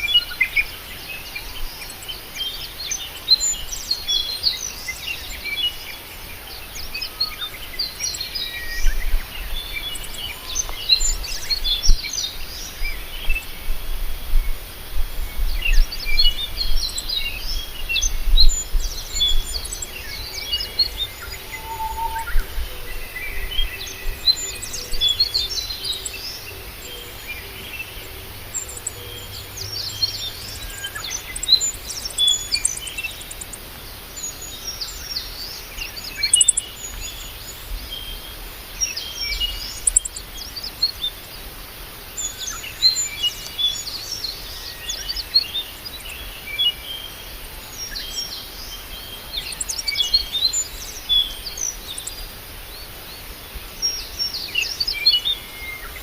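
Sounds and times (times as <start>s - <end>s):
wild birds chirping and twittering: 0.0s - 56.0s.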